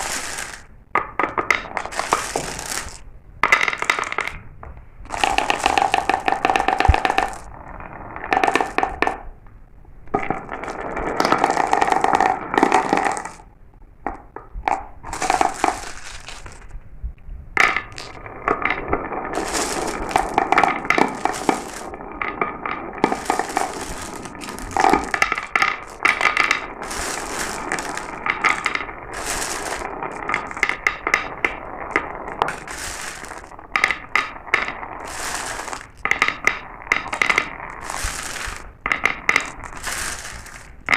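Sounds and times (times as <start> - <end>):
marbles rattling down a marble run: 0.0 - 4.4, 5.1 - 9.3, 10.1 - 13.5, 14.6 - 16.7, 17.6 - 40.9.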